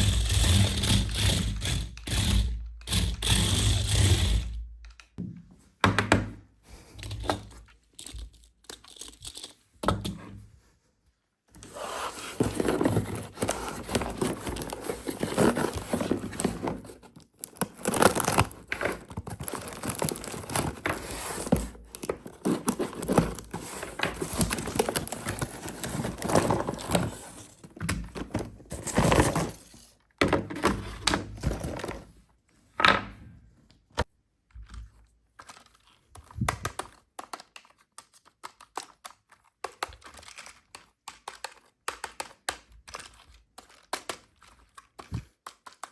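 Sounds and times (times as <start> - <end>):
plastic packaging crinkling and tearing: 11.8 - 27.3.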